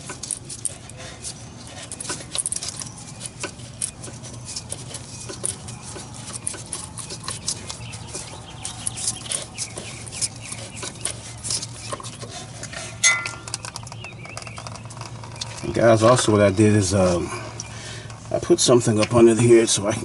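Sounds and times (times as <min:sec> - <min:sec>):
steady low hum: 0:00.0 - 0:20.0
metallic clink: 0:13.0 - 0:13.7.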